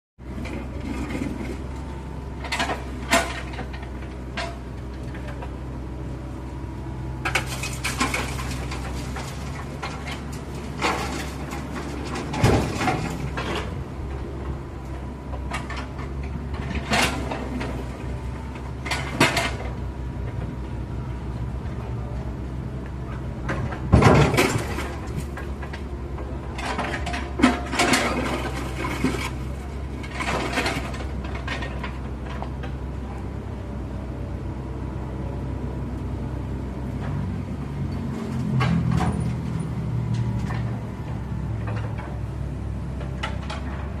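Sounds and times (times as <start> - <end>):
excavator diesel engine droning: 0.2 - 44.0
metallic clanks and scrapes: 7.2 - 13.8, 26.5 - 32.5.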